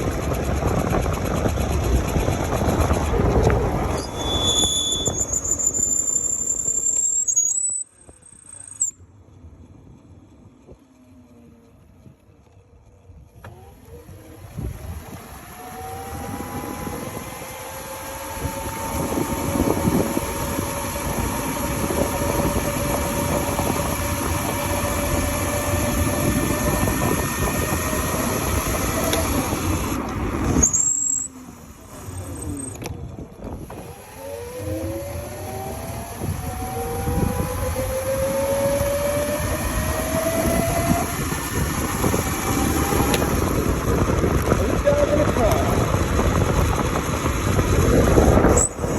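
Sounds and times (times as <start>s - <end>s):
electric motor whining: 13.4s - 48.9s.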